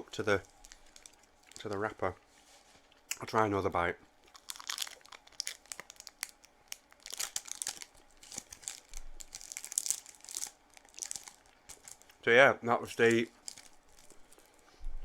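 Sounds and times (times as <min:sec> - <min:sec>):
plastic wrapper crinkling: 0:00.1 - 0:02.0, 0:04.3 - 0:12.2, 0:12.9 - 0:14.7.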